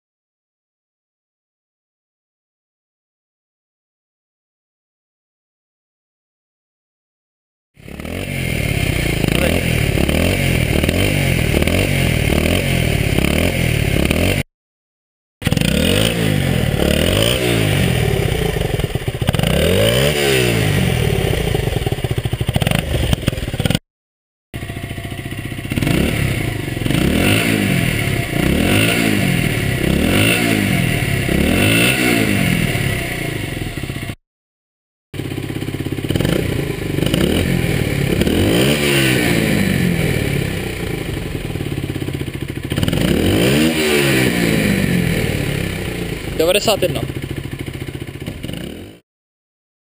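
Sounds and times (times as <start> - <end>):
motorcycle engine revving: 7.8 - 14.5, 15.4 - 23.8, 24.6 - 34.2, 35.2 - 49.0.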